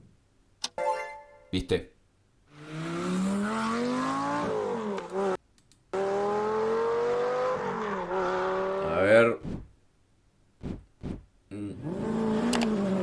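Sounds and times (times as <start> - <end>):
car engine revving: 2.5 - 8.9.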